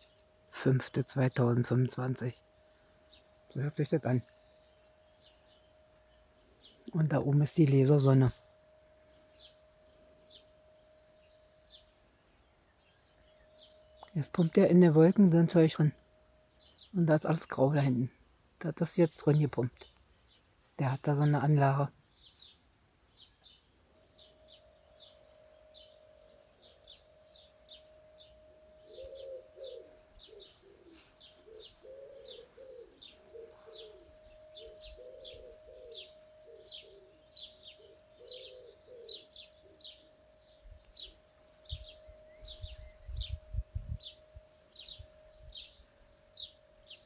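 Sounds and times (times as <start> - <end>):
small birds chirping: 0.0 - 8.4, 9.0 - 47.0
dove cooing: 25.8 - 40.2.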